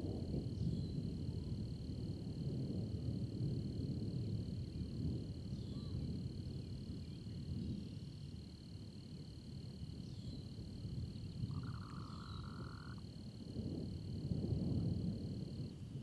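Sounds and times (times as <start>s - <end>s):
storm rumble: 0.0s - 16.0s
high-pitched insect drone: 7.0s - 13.2s
frog buzzy trill: 11.5s - 13.0s.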